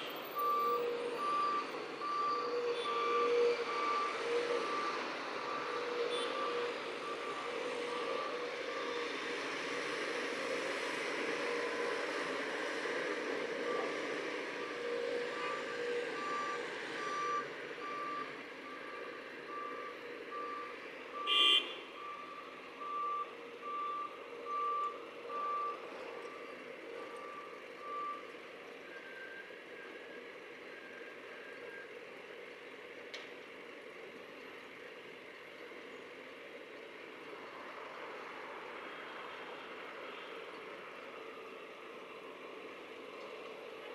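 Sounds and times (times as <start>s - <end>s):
reversing alarm beeping: 0.0s - 9.1s, 13.5s - 28.3s.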